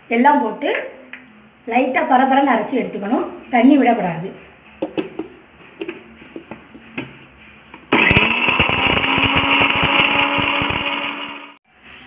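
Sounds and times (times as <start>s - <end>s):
mixer grinder motor running: 7.9s - 11.6s.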